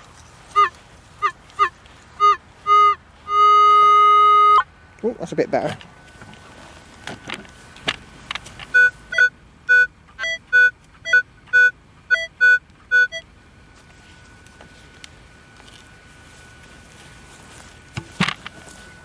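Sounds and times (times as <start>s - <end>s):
faint steady hum: 0.0s - 19.0s
metal detector beeping: 0.5s - 4.7s, 8.6s - 13.3s.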